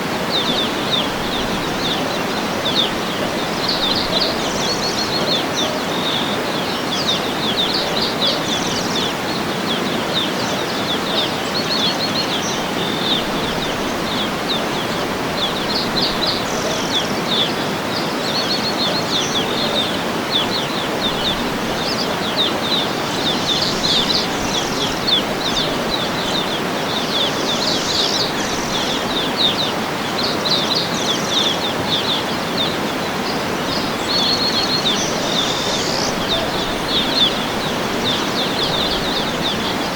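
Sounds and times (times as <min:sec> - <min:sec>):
waterfall rushing: 0:00.0 - 0:39.9
birds chirping and trilling: 0:00.2 - 0:39.9.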